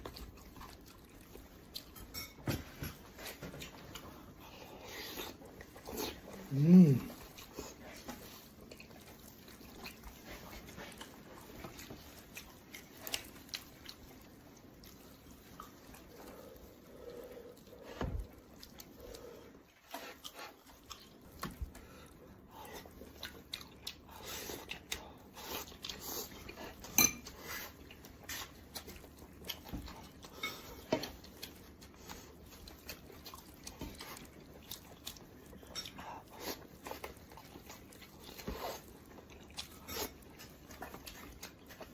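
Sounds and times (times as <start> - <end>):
wet chewing and smacking: 0.0 - 41.9
dishes clinking: 1.9 - 3.0.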